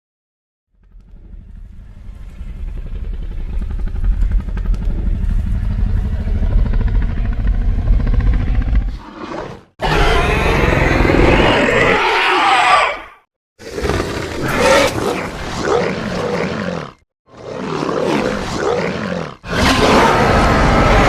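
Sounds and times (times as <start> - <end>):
deep rattling growl: 0.7 - 12.6, 13.6 - 21.0
loud creature roar: 8.9 - 21.0.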